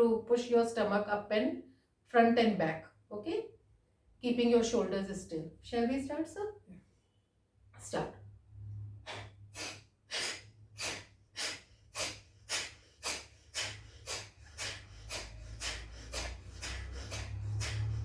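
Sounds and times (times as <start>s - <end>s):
forceful nasal exhalations: 9.0s - 18.0s.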